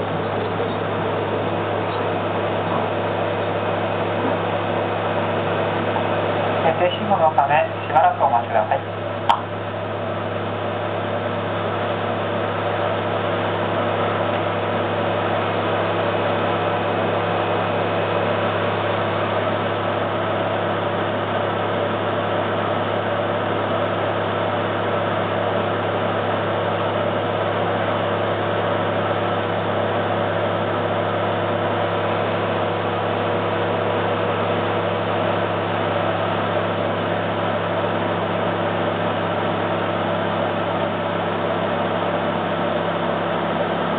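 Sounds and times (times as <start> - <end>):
constant train hum: 0.0 - 24.3.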